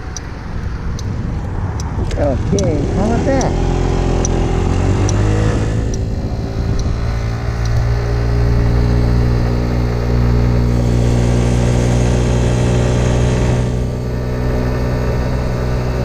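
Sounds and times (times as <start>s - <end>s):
faint ticks: 0.1s - 1.1s
motor scooter engine running: 0.9s - 16.0s.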